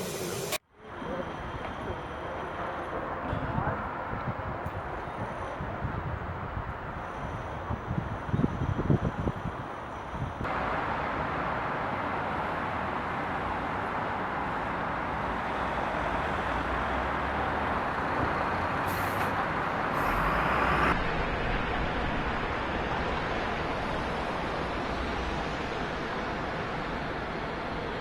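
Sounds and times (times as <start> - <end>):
hot-air welder rushing air: 0.0 - 0.6.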